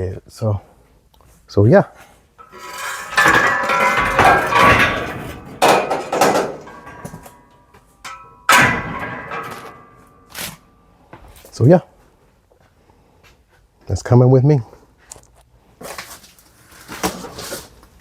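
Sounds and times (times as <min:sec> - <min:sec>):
ringing metallic knocks: 0:02.4 - 0:10.4
metal bed frame clanking: 0:02.4 - 0:10.7.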